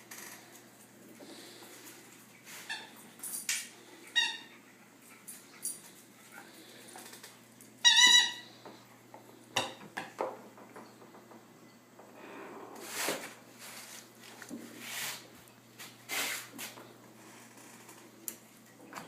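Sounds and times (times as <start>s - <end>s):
squeaky toy squeaking: 7.8s - 8.4s.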